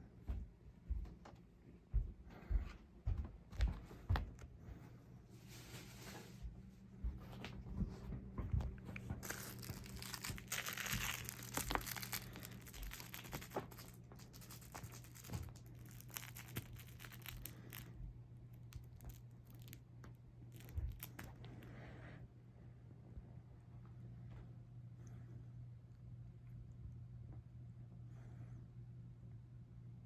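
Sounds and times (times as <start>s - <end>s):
crinkling and scratching: 7.2s - 21.8s.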